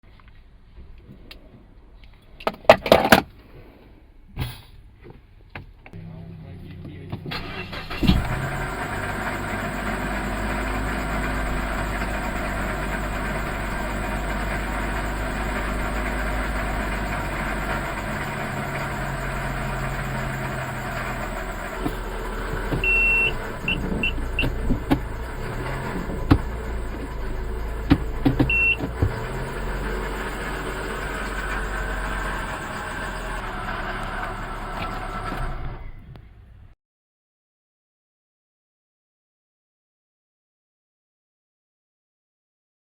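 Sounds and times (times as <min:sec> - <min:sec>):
car engine idling: 0:07.4 - 0:35.8.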